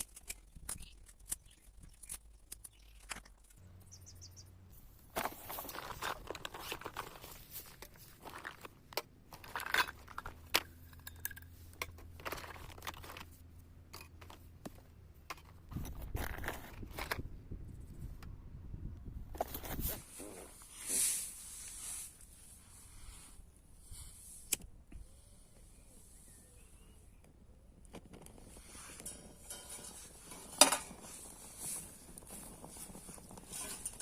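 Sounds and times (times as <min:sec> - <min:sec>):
rustling: 0:04.7 - 0:10.8, 0:27.9 - 0:34.0.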